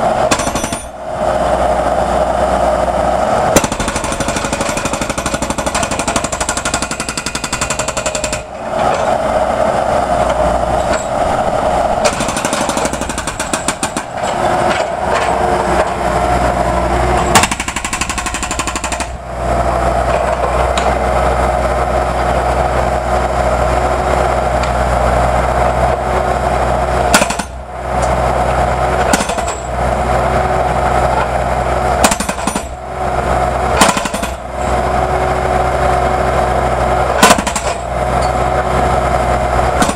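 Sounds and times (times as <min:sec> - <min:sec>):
jackhammer breaking concrete: 0:00.3 - 0:01.0, 0:03.5 - 0:09.1, 0:12.0 - 0:15.9, 0:17.2 - 0:19.2, 0:27.1 - 0:28.1, 0:29.0 - 0:29.7, 0:32.0 - 0:32.8, 0:33.7 - 0:34.7, 0:37.1 - 0:38.4, 0:39.6 - 0:39.9.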